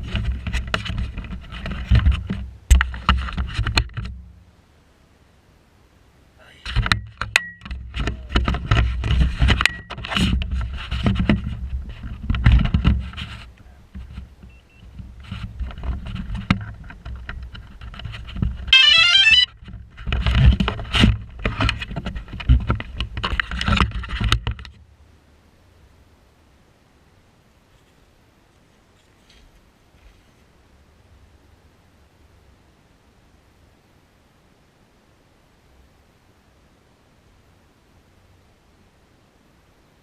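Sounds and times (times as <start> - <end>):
handling knocks and rustling: 6.7 - 18.7, 27.7 - 30.5.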